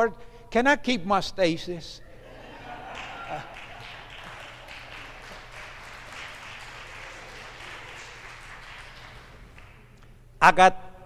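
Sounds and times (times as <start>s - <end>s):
crowd applauding in a hall: 2.4s - 10.0s.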